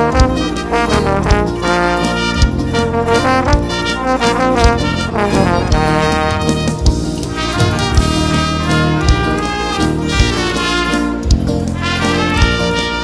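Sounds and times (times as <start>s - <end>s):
brass lead melody: 0.0s - 13.0s
steady drum beat: 0.0s - 13.0s.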